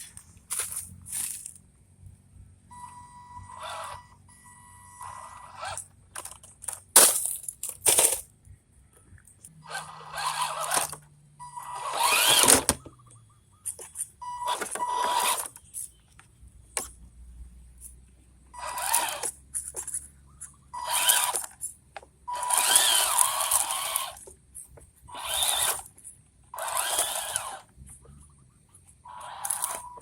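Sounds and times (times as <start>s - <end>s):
tyres crunching over gravel: 0.0s - 1.6s
electric motor and gears whining: 2.7s - 6.5s, 9.6s - 13.0s, 13.9s - 15.8s, 18.5s - 19.4s, 20.5s - 30.0s.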